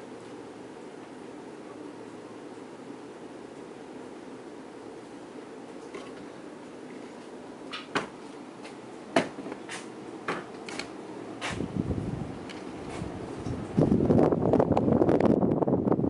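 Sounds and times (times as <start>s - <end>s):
ceiling fan humming: 0.0s - 16.0s
wind buffeting microphone: 11.5s - 16.0s.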